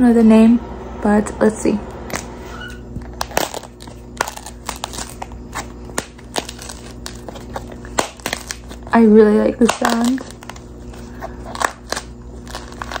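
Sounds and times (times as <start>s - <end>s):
fruit shell cracking: 3.0s - 8.9s, 9.6s - 10.7s, 11.4s - 13.0s.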